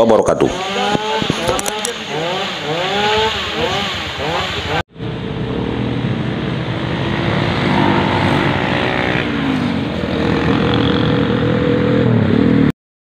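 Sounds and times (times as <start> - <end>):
engines running: 0.4 - 12.7.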